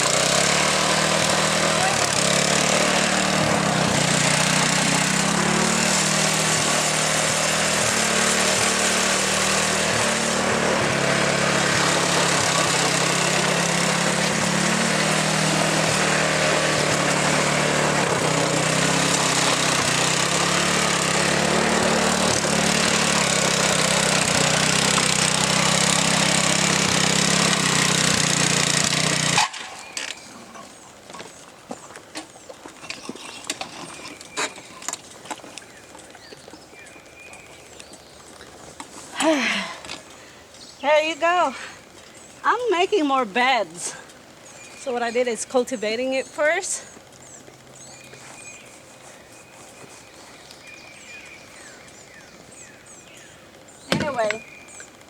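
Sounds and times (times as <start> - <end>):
garden tiller engine running: 0.0 - 55.0.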